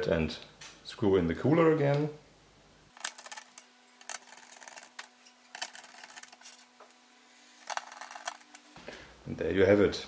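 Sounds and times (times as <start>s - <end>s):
faint steady hum: 0.0s - 10.0s.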